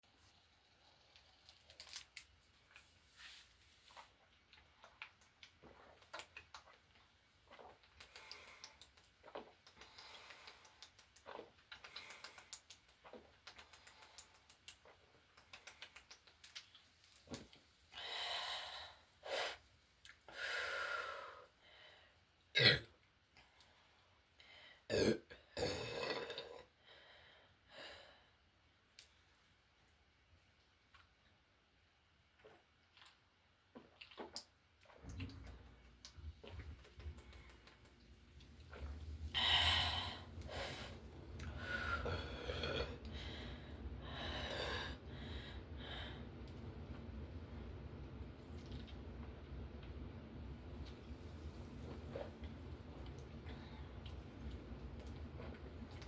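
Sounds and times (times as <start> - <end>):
person burping: 22.6 - 22.9, 24.9 - 26.7, 42.1 - 43.0
person swallowing: 39.8 - 43.2.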